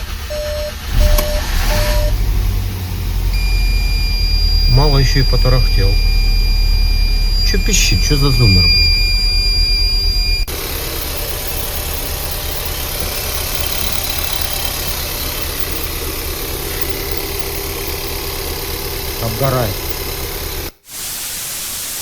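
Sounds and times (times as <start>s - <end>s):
car engine idling: 0.0s - 20.8s
high-pitched electronic buzzer beeping: 3.4s - 16.1s, 16.7s - 18.2s.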